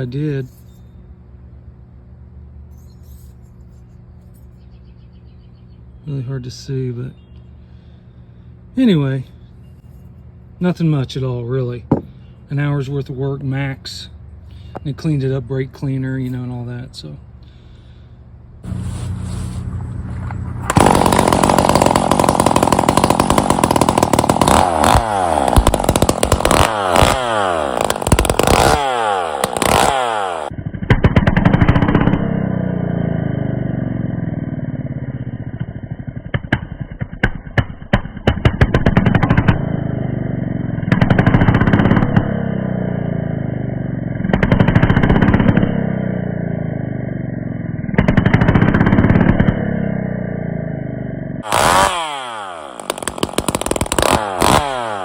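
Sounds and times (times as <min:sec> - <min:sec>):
chainsaw revving: 0:18.6 - 0:36.5, 0:38.7 - 0:55.0.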